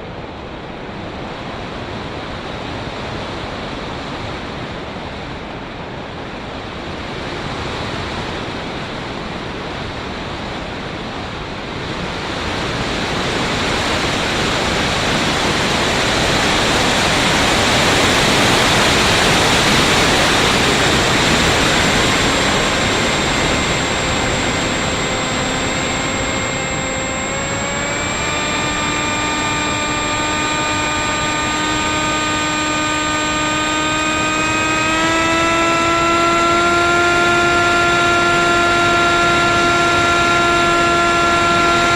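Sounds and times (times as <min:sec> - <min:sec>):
wind rushing over plane: 0:00.0 - 0:41.9
electric motor whine: 0:13.3 - 0:41.9.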